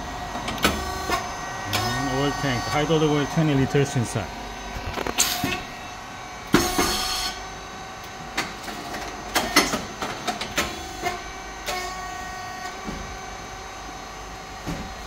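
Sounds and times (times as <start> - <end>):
machine motor humming: 0.0 - 8.6.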